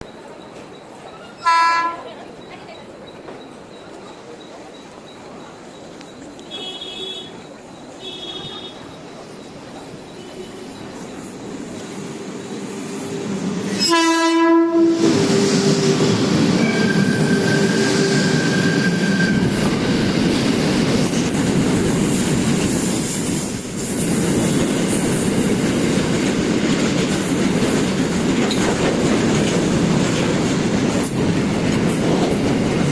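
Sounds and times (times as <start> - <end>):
train rumble: 0.0 - 32.9
locomotive horn blast: 1.4 - 2.1, 13.8 - 15.6
wheel clatter on rails: 18.2 - 32.9.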